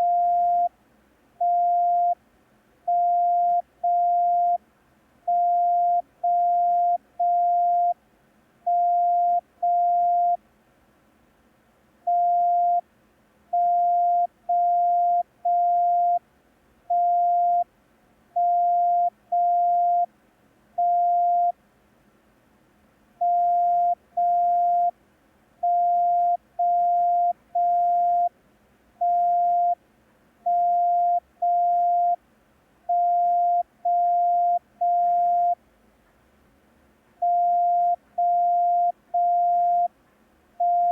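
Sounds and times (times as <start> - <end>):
morse code beeps: 0.0 - 0.7, 8.7 - 10.4, 13.6 - 16.2, 18.4 - 20.1, 23.2 - 24.9, 25.6 - 28.3, 29.0 - 29.8, 30.5 - 32.2, 32.9 - 35.6, 37.2 - 39.9, 40.6 - 40.9.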